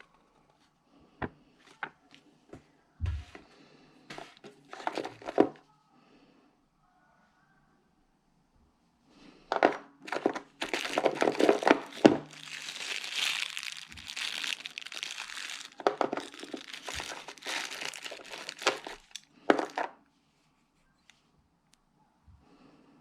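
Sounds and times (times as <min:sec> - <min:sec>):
packaging crinkling: 0:10.1 - 0:19.9.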